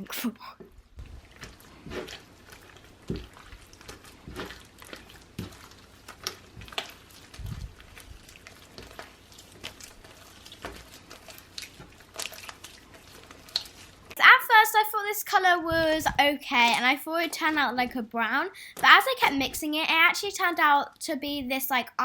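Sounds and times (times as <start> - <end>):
slime squelching by hand: 0.0 - 14.6, 15.4 - 18.0.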